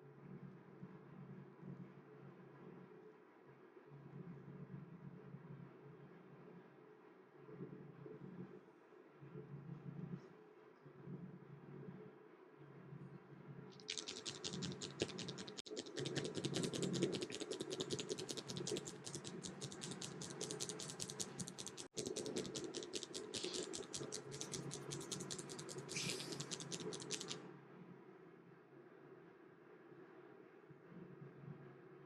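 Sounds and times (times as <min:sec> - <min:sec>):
hands massaging scalp and hair: 0:13.8 - 0:27.4.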